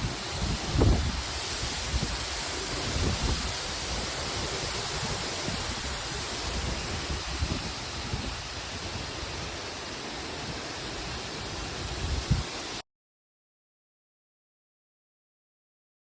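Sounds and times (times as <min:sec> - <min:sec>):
wind buffeting microphone: 0:00.0 - 0:09.7, 0:11.7 - 0:12.6
strong storm wind rushing: 0:00.0 - 0:12.8.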